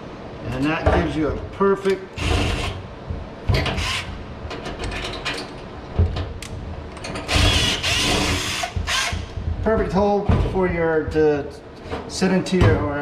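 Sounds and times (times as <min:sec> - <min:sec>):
drill boring through sheet metal: 0:02.2 - 0:02.8, 0:03.7 - 0:04.1, 0:07.3 - 0:09.2.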